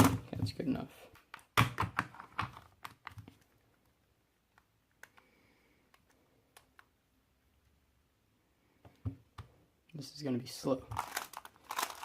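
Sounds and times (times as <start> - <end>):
plastic puzzle clicking: 11.0 - 12.0.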